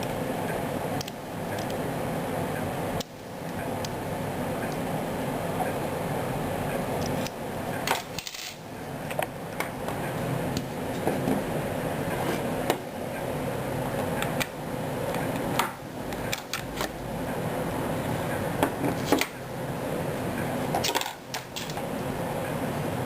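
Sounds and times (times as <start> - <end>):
steady background hum: 0.0 - 23.0
small metal parts clicking: 8.0 - 8.6.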